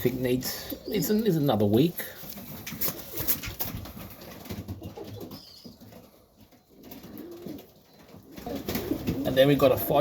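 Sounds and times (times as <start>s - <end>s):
pigeons cooing: 0.4s - 2.2s, 4.8s - 9.6s.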